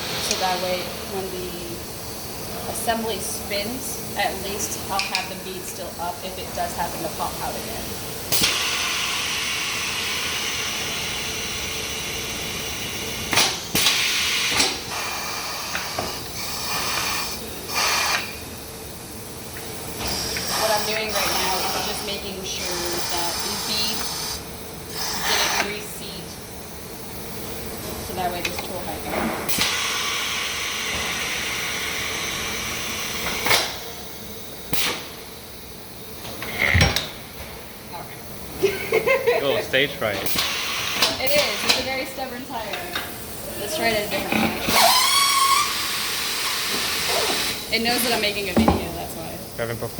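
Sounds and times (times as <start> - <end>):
compressed air hissing: 13.3 - 18.4, 19.9 - 26.1, 29.5 - 35.2, 40.2 - 42.0, 44.4 - 49.3.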